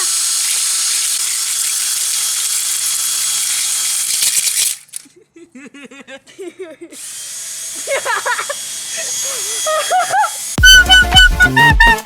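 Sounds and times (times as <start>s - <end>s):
electric drill grinding rattle: 0.0s - 5.1s, 7.0s - 11.1s.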